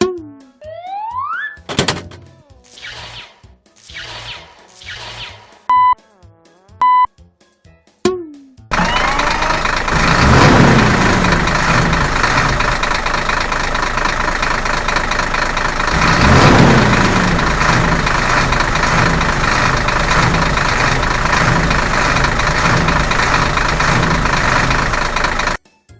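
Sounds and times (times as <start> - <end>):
bulldozer engine running: 1.6 - 2.5, 8.7 - 25.6.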